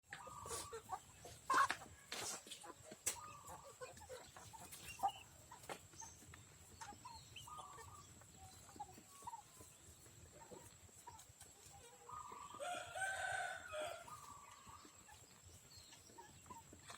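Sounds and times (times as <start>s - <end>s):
chickens clucking: 0.0s - 16.9s.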